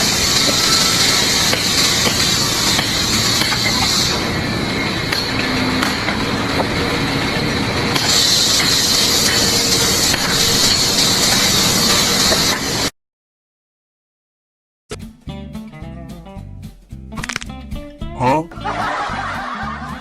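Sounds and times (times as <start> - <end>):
loud steady hissing: 0.0 - 12.9.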